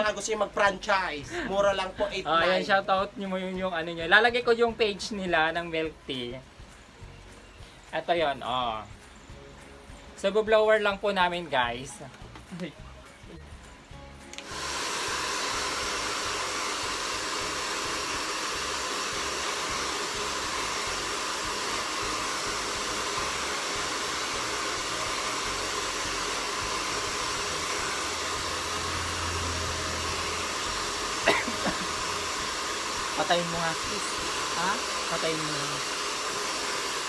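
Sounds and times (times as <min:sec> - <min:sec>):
hair dryer running: 0:14.3 - 0:37.0.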